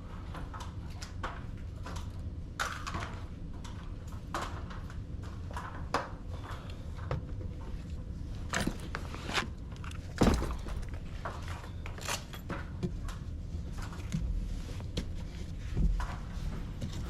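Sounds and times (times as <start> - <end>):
knocks and thumps of handling gear: 8.5 - 11.2.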